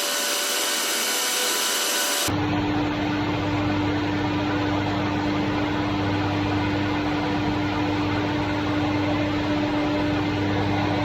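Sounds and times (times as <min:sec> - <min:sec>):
surface planer humming: 0:00.0 - 0:02.3.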